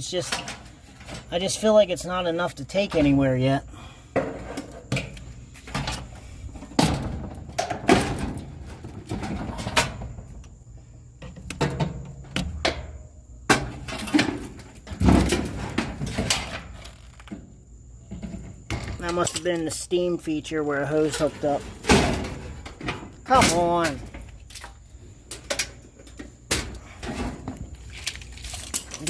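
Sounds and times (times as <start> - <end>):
clanks and rattles of dryer parts: 0.0 - 29.0
scraping of parts: 20.7 - 29.0.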